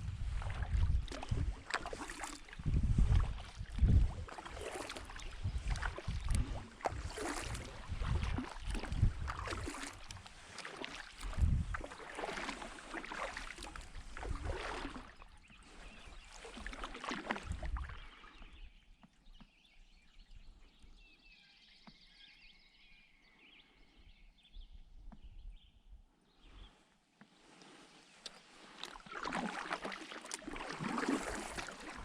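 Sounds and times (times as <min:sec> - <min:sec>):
canoe paddle strokes in water: 0:00.0 - 0:19.6, 0:27.2 - 0:32.0.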